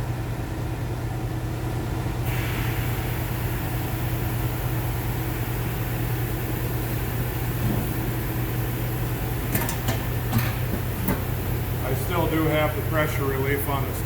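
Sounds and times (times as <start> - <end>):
machine hum: 0.0 - 14.0
steady air hiss: 2.3 - 9.4.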